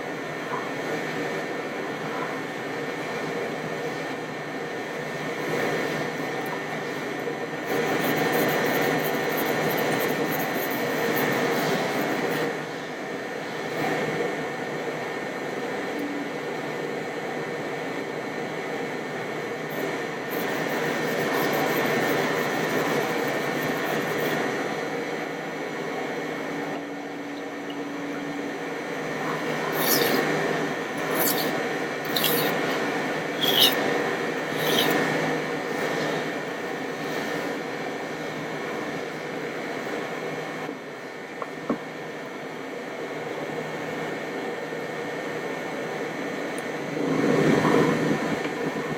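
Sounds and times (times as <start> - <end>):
knife scraping on whetstone: 7.7 - 12.4, 20.3 - 24.4, 29.7 - 30.3, 31.0 - 32.8, 33.4 - 33.8, 34.5 - 35.0.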